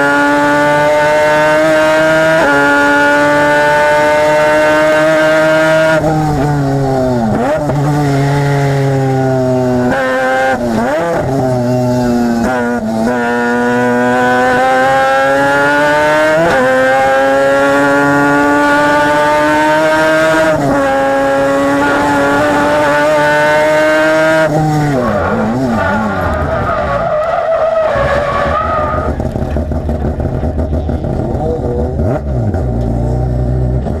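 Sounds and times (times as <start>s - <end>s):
rotary engine at full throttle: 0.0s - 27.0s.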